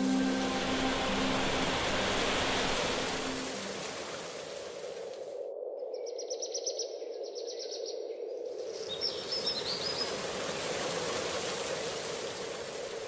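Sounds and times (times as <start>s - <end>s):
rushing water: 0.0s - 5.4s, 9.1s - 13.0s.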